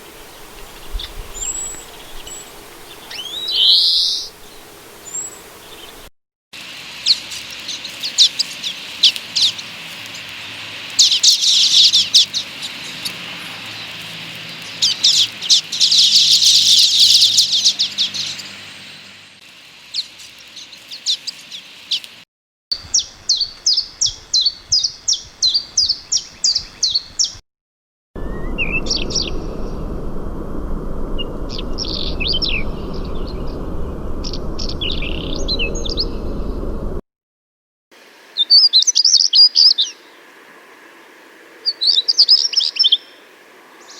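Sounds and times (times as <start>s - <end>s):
background hiss: 0.0s - 22.2s, 38.0s - 43.9s
songbird song: 0.0s - 27.4s, 28.2s - 29.9s, 31.2s - 36.8s, 38.3s - 43.9s.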